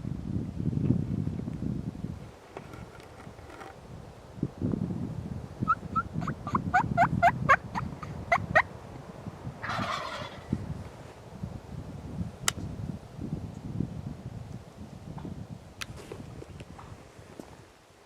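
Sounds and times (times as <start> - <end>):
rustle: 0.0 - 18.0
turkey gobbling: 5.7 - 8.7, 9.6 - 10.5
sharp click: 12.4 - 12.6.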